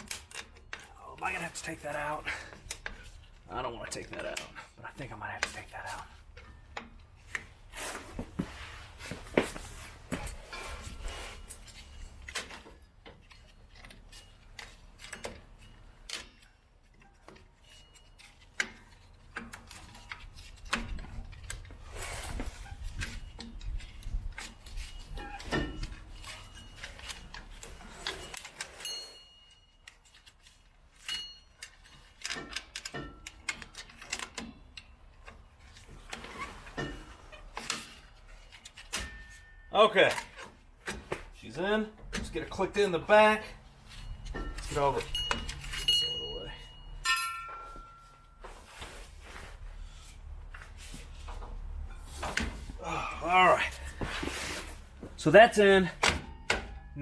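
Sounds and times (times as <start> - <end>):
metallic clicks and clinks: 43.8 - 48.2.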